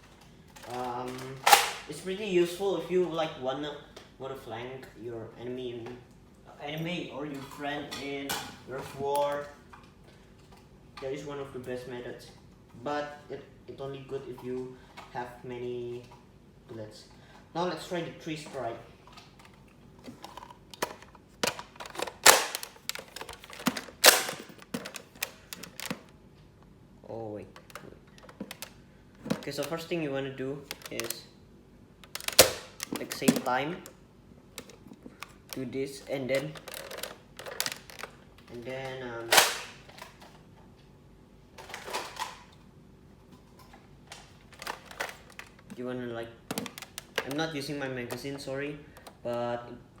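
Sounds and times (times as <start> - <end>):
plastic clicks and rattles: 0.0 - 1.9, 18.4 - 26.2, 27.5 - 30.0, 30.6 - 31.2, 32.0 - 40.4, 41.6 - 42.6, 43.5 - 45.8, 46.4 - 49.3
toy blaster plastic clicking: 0.6 - 1.9, 20.8 - 26.1, 32.0 - 33.9, 39.3 - 39.8, 46.5 - 47.5.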